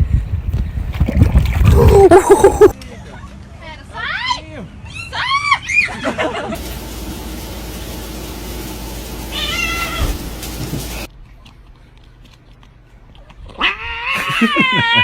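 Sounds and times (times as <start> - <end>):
cat meowing: 9.3 - 10.1, 13.6 - 15.0.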